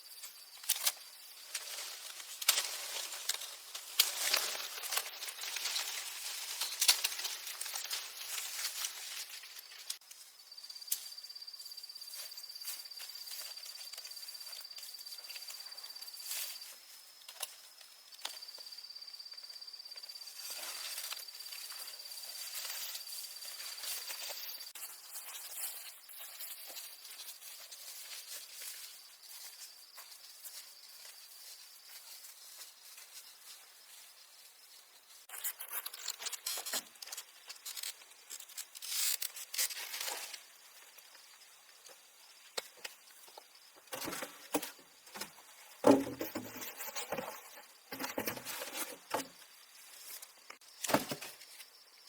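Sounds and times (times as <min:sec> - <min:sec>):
high insect trill: 0:00.0 - 0:52.0
rustling and crackling: 0:00.6 - 0:10.1, 0:20.1 - 0:51.6.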